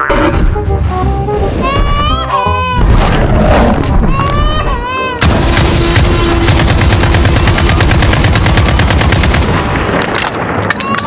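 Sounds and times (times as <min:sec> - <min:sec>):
rapid machine-gun fire: 0:05.2 - 0:10.5.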